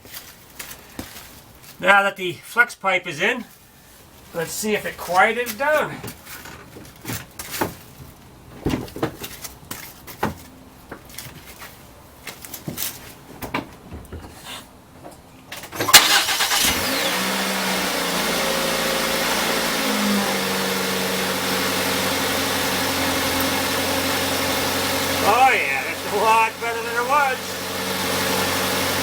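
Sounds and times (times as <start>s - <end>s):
car engine cranking and starting: 15.5s - 29.0s
car engine idling: 15.9s - 29.0s.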